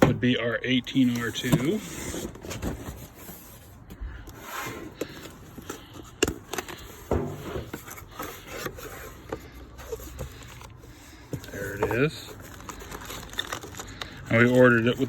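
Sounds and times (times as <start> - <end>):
packaging rubbing and scraping: 0.9 - 15.0.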